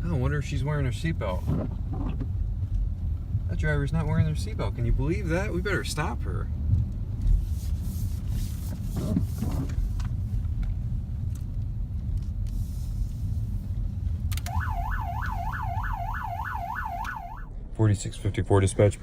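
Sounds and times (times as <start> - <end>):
car engine and road rumble: 0.0 - 19.0
police siren yelping: 14.4 - 17.5.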